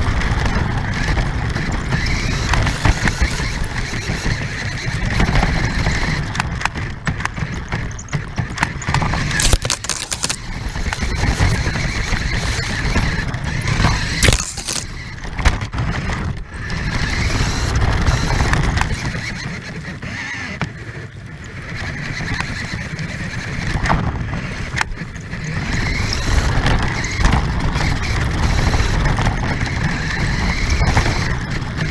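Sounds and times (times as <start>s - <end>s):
wheels rumbling on rough ground: 0.0s - 31.9s
toy car motor whining: 8.9s - 15.3s, 16.7s - 21.0s, 25.4s - 31.9s.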